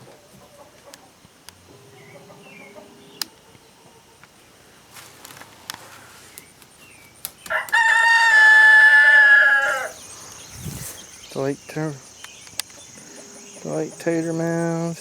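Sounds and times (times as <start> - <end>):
rooster crowing: 7.5 - 10.2
faint clicks: 12.2 - 13.2.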